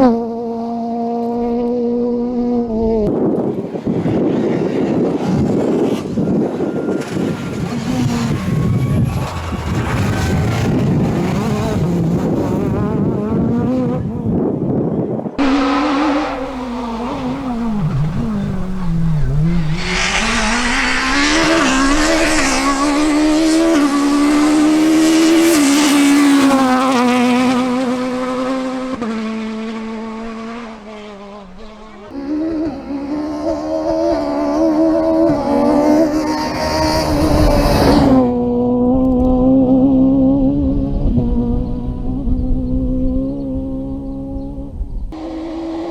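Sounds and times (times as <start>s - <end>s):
rally car engine revving: 0.0s - 14.5s, 15.4s - 45.9s
tyre noise hiss: 15.4s - 28.5s.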